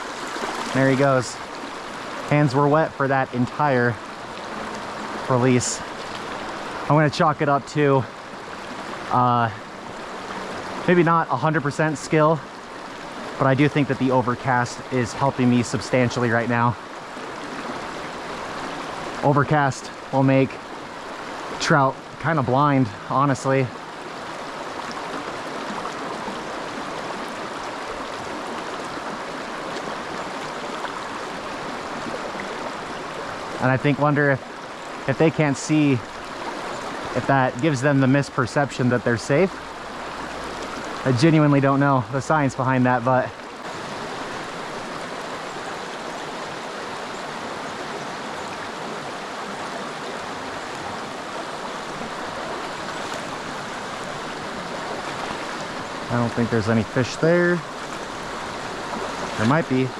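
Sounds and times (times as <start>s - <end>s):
creek water rushing over rocks: 0.0s - 59.9s.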